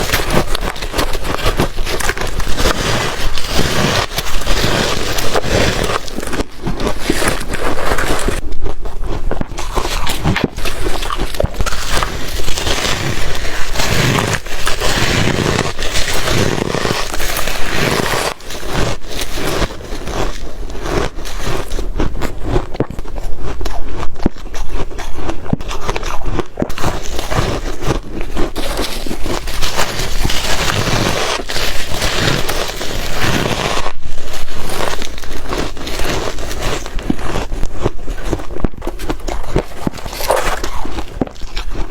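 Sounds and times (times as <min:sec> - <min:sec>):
crunching and chewing ice: 0:00.0 - 0:41.9.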